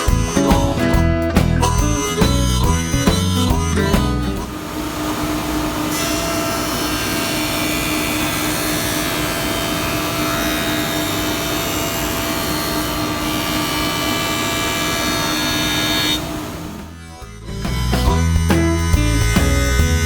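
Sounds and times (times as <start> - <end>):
wood planer running: 4.4 - 18.5.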